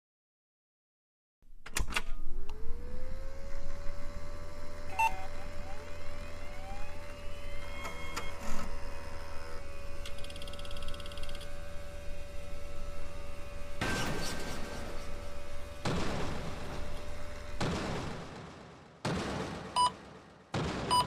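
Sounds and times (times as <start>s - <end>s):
low hum: 1.6s - 18.8s
siren-like tone: 4.9s - 9.6s.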